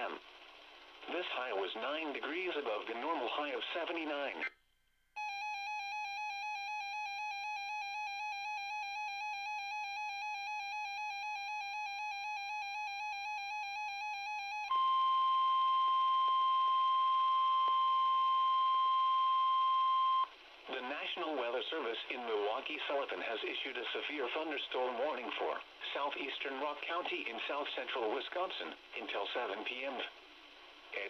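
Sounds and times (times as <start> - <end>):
radio static: 1.0 - 4.5, 20.7 - 30.2
steady warning alarm tone: 5.2 - 20.3.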